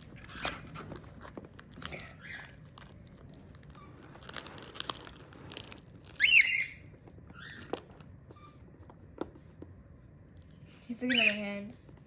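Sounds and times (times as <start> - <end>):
plastic packaging crinkling: 0.0 - 6.8
cockatiel call: 6.2 - 7.7, 11.0 - 11.5.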